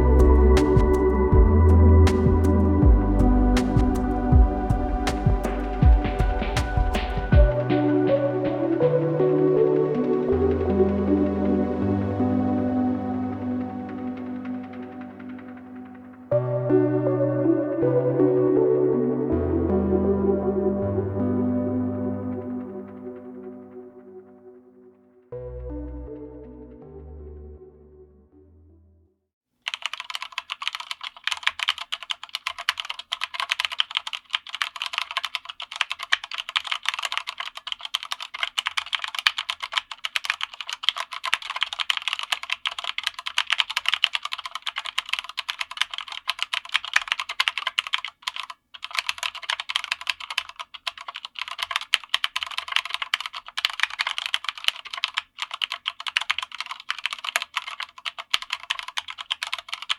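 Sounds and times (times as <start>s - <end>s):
mechanical keyboard typing: 29.6s - 59.9s.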